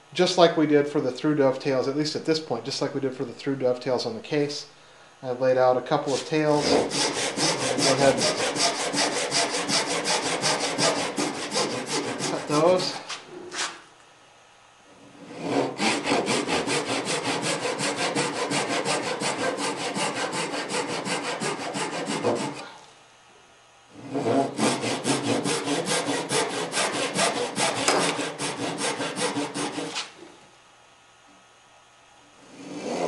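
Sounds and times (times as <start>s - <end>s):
hand saw cutting wood: 6.0s - 13.8s, 15.2s - 22.8s, 24.0s - 30.1s, 32.6s - 33.0s.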